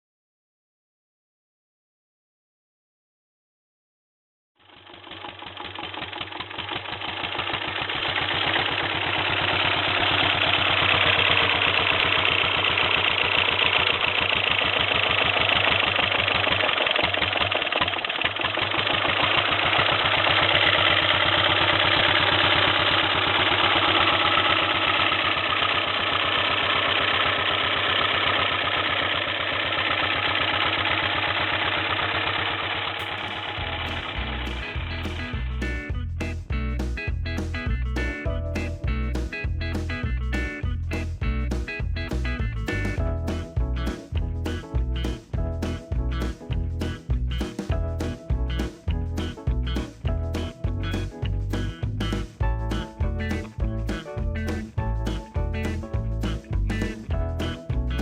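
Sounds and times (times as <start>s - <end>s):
engine idling: 4.6s - 58.0s.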